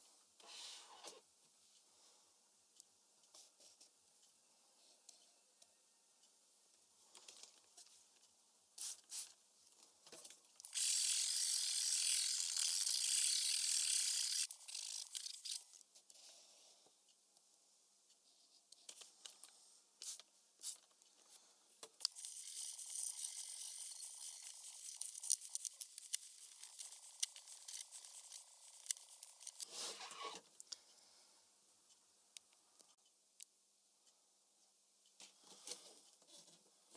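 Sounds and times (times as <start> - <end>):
typewriter ratcheting rattle: 10.6 - 15.8, 22.1 - 29.6.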